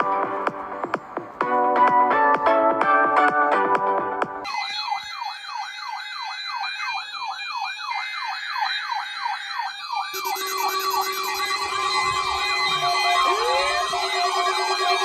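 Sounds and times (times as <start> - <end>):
steady alarm tones: 4.4 - 15.0
sweeping siren-like alarm tone: 4.4 - 15.0.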